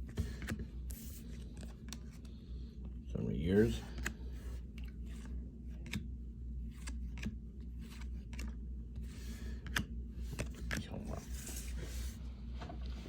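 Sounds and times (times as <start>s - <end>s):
steady low hum: 0.0s - 13.0s
cards snapping and rustling: 3.9s - 6.1s, 6.7s - 8.6s.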